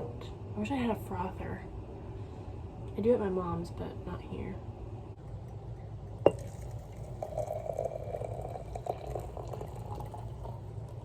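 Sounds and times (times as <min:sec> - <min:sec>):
milk pouring into a cup: 0:06.3 - 0:11.0.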